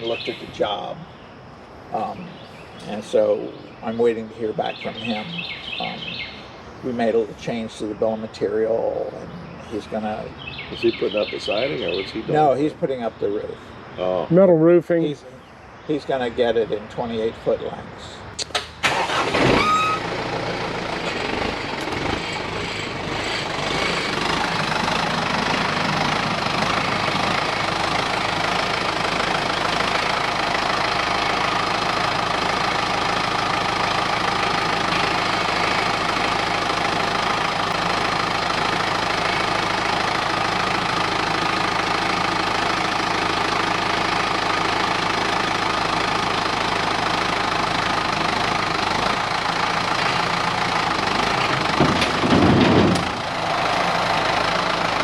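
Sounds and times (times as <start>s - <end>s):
engine starting and idling: 18.4s - 55.0s.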